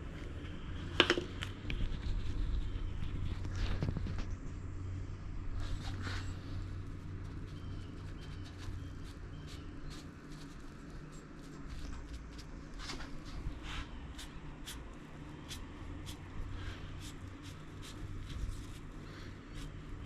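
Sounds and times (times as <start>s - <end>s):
low hum: 0.0s - 20.0s
paintbrush dabbing on metal: 5.7s - 20.0s.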